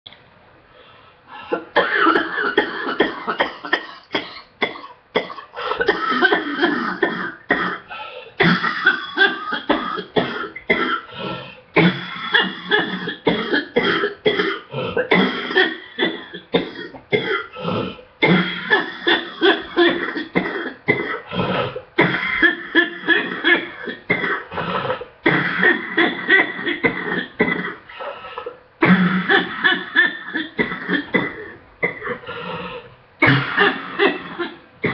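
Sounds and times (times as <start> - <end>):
person coughing: 1.4 - 34.9.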